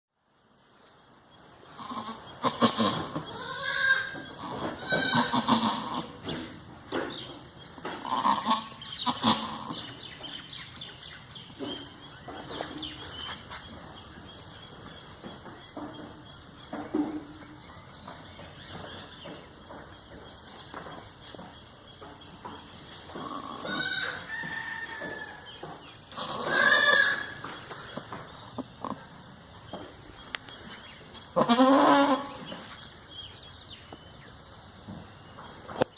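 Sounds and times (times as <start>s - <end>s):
goat bleating: 1.8s - 6.2s, 8.0s - 9.9s, 23.2s - 24.3s, 26.2s - 27.4s, 31.3s - 32.5s.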